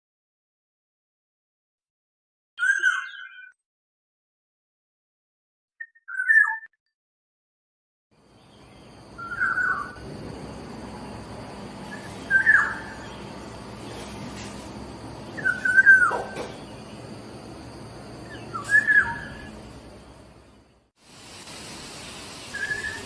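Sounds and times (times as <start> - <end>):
steady background hiss: 8.2 - 23.0
bird calling: 9.2 - 10.0, 11.8 - 14.2, 15.2 - 17.0, 18.2 - 20.2, 22.4 - 23.0.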